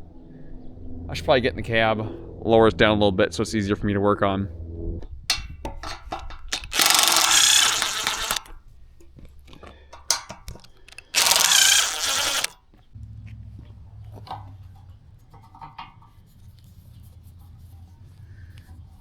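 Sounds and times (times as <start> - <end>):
power tool running: 6.5 - 8.5, 10.9 - 12.5.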